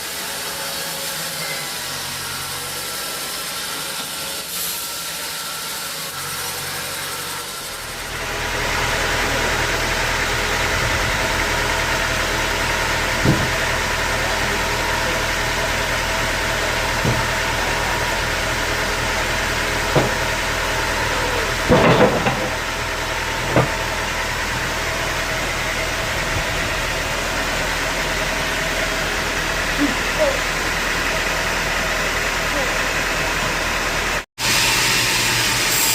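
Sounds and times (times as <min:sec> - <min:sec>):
sawmill machinery droning: 0:00.0 - 0:35.9
sharp knocks: 0:13.2 - 0:13.6, 0:19.9 - 0:20.2.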